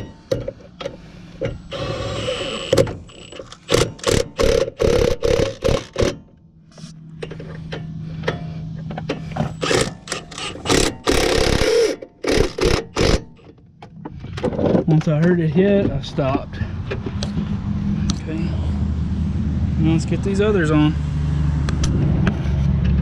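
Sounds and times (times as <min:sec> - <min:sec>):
quick ratchet clicks: 0:02.7 - 0:06.2, 0:09.6 - 0:13.3.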